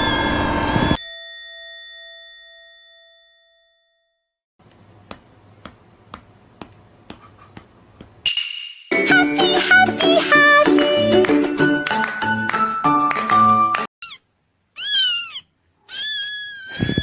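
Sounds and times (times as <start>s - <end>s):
bell-like chime: 0.6s - 4.2s, 8.3s - 9.4s.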